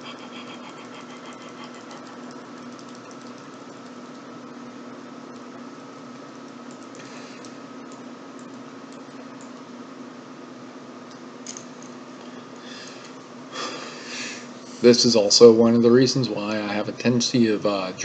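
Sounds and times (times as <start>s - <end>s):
electrical hum and hiss: 0.0s - 18.0s
computer mouse clicks: 1.7s - 4.3s, 6.1s - 9.6s.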